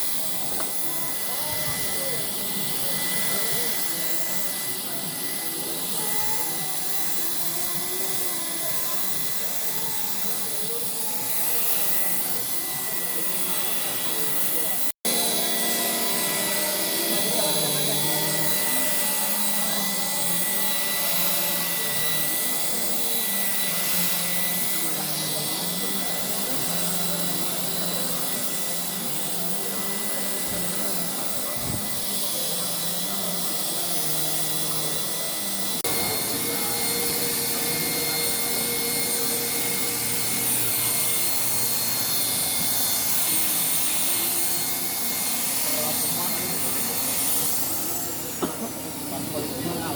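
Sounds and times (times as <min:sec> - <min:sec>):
power tool whining: 0:00.0 - 0:49.9.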